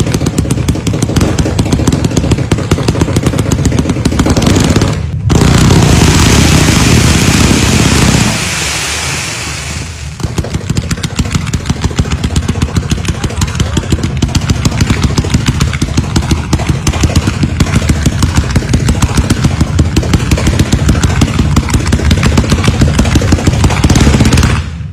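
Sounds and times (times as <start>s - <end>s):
rapid firecracker bangs: 0.0s - 24.9s
firecrackers hissing and crackling: 5.3s - 12.0s.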